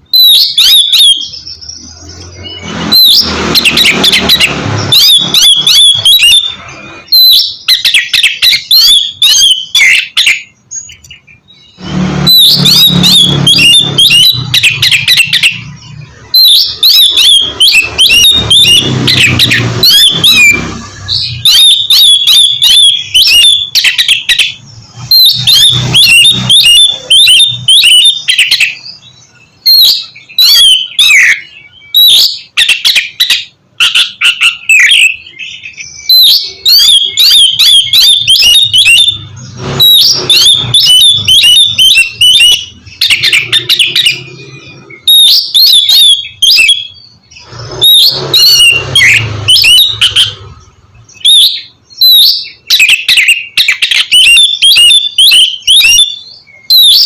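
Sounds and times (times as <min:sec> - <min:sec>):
bird singing varied song: 0:00.0 - 0:57.0.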